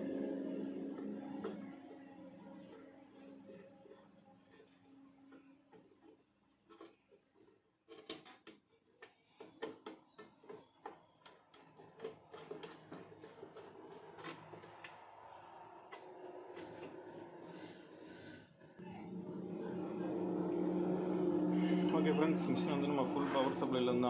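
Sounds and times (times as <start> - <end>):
distant road traffic hum: 10.8 - 24.0.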